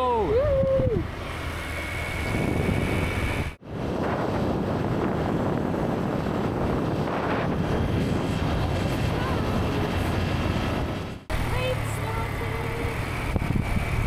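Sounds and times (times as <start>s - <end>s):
wind rushing over microphone: 0.0s - 14.0s
moped engine: 1.0s - 3.6s, 5.1s - 14.0s.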